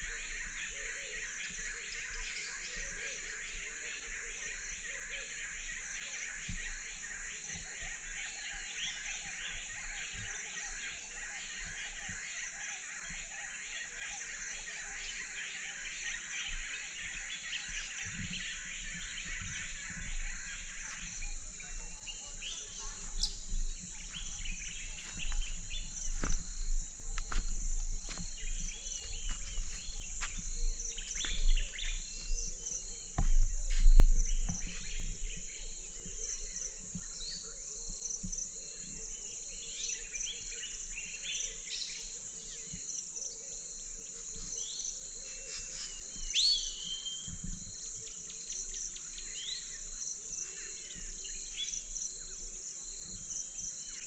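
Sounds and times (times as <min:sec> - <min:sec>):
birds chirping: 0:00.0 - 0:42.8
insects trilling: 0:00.0 - 0:54.0.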